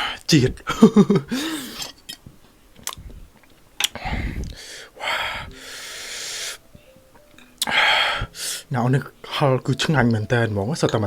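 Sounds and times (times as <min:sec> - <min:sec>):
sharp breaths drawn in: 0:01.3 - 0:02.0, 0:04.0 - 0:07.0, 0:07.6 - 0:08.7
long hissing breath: 0:04.0 - 0:06.8, 0:07.6 - 0:08.7.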